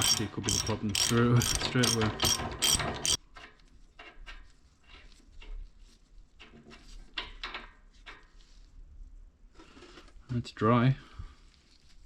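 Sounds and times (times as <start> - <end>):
small metal tools clicking: 0.0 - 3.2.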